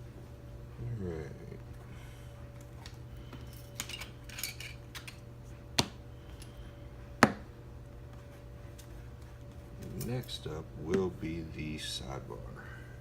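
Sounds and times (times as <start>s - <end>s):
metal lock parts clinking: 3.5s - 5.2s.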